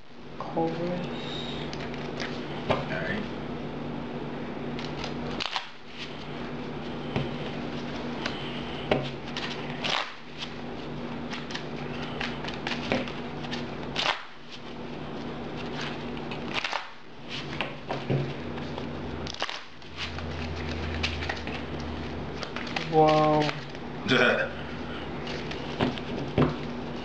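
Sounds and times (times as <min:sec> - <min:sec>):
low hum: 0:18.2 - 0:27.0.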